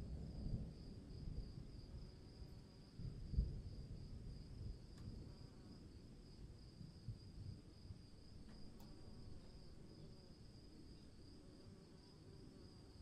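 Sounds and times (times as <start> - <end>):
insects chirring: 7.8 - 13.0.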